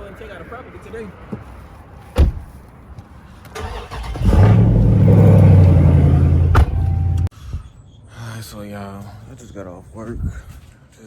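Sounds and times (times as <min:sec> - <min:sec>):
thump: 0:02.2 - 0:02.5, 0:06.4 - 0:07.2
car engine starting and running: 0:03.6 - 0:07.3.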